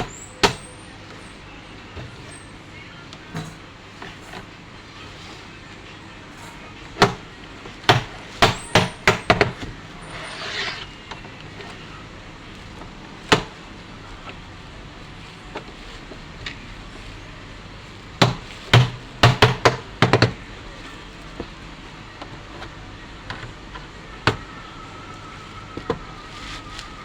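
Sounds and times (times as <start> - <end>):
short scrape: 10.0 - 11.0.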